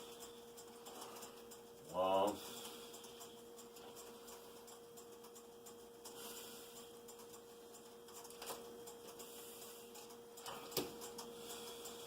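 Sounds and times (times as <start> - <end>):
faint steady hum: 0.0 - 12.0
light ticks: 2.6 - 12.0.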